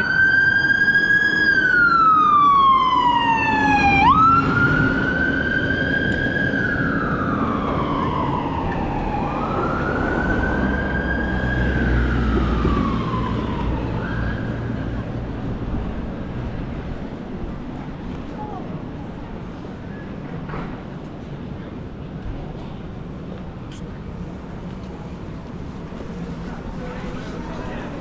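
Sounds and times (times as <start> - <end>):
fire engine siren wailing: 0.0 - 15.6.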